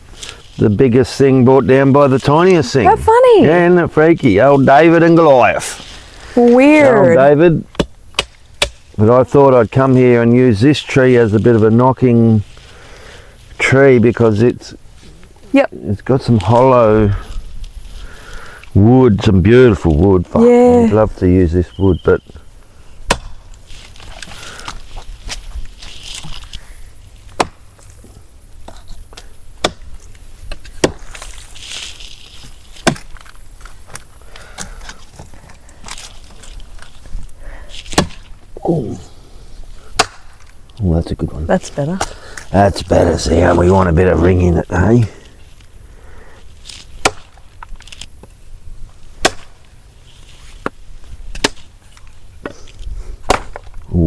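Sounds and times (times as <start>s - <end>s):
knocking on hollow tree trunk: 7.7s - 8.8s, 23.1s - 23.4s, 27.4s - 27.7s, 29.6s - 29.9s, 32.8s - 33.2s, 53.3s - 53.8s.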